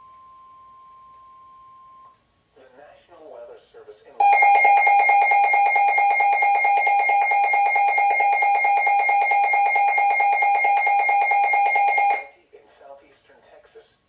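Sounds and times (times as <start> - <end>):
two-tone alert tone: 4.2 - 12.3.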